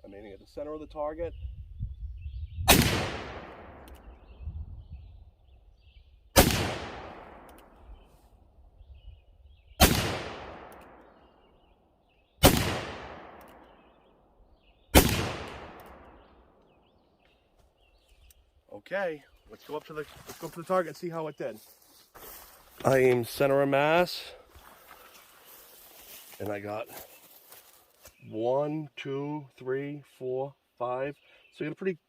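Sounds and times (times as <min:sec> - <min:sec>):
revolver shots with echo: 0:12.4 - 0:13.4, 0:15.0 - 0:16.1.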